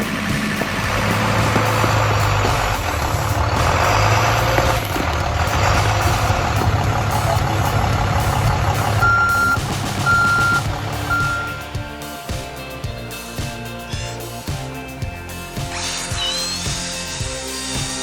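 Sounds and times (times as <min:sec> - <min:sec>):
diesel engine running under load: 0:00.0 - 0:12.0
reversing alarm beeping: 0:08.9 - 0:11.7.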